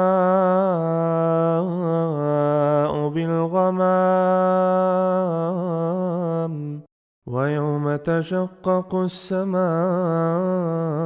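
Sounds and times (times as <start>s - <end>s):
man reciting melodically: 7.3s - 11.0s.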